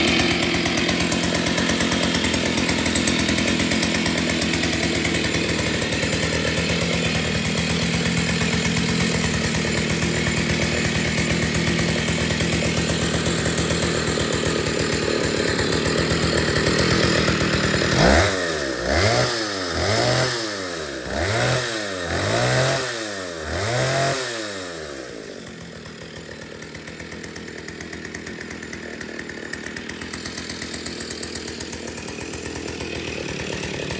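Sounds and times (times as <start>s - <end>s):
chainsaw revving and idling: 0.0s - 33.9s.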